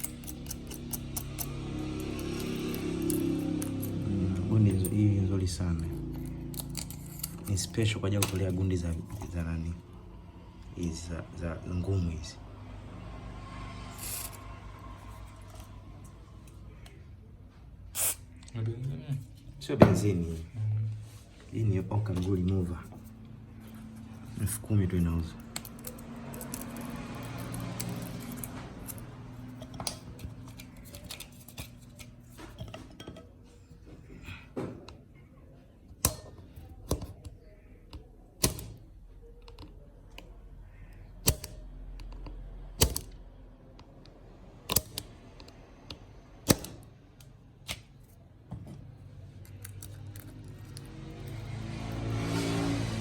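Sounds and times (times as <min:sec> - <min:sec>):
small hand tools clicking and tapping: 0:00.0 - 0:03.9.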